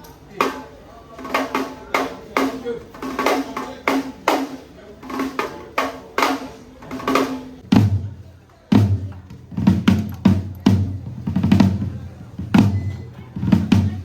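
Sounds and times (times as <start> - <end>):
higher-pitched drum hits: 5.2 - 14.0.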